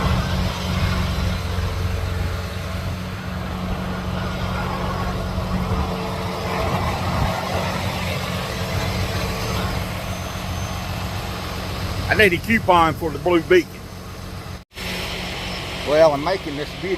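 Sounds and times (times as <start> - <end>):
diesel truck engine running: 0.0 - 16.9.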